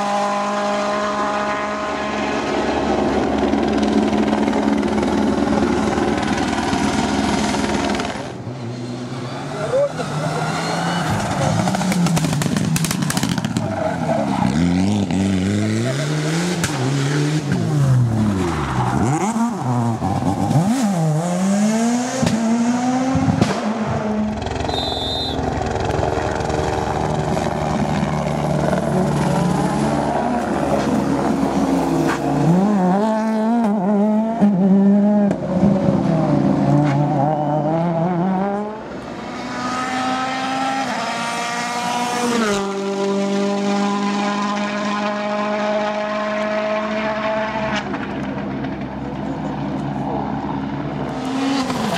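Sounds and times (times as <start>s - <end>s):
rally car engines revving: 0.0s - 51.9s
engine drone rising in pitch: 14.5s - 48.1s.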